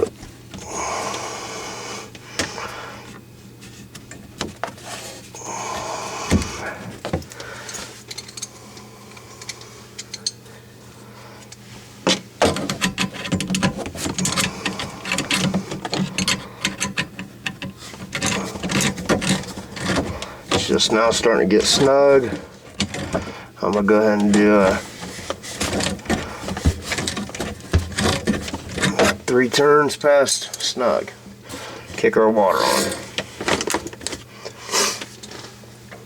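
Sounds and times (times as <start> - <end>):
sharp knocks: 26.6 - 27.0.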